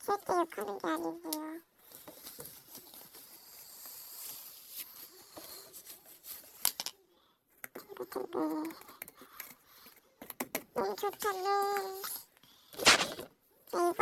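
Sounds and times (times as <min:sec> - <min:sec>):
slime popping: 0:12.8 - 0:13.2.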